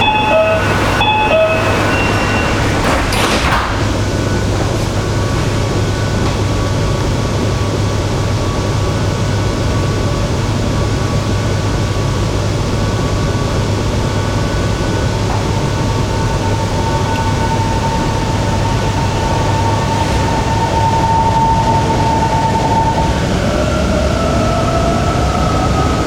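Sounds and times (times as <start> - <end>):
whining tones: 0.0 - 5.3, 13.6 - 26.0
train rumble: 0.0 - 26.0
low hum: 12.6 - 26.0.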